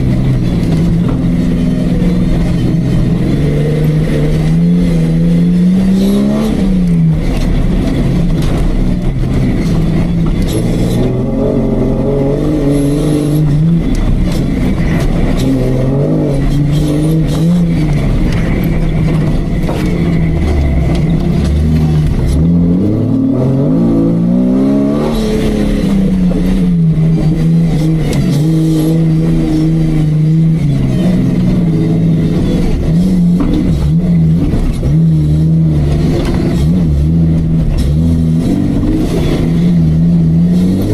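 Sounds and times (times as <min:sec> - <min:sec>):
engine revving under load: 0:00.0 - 0:40.9.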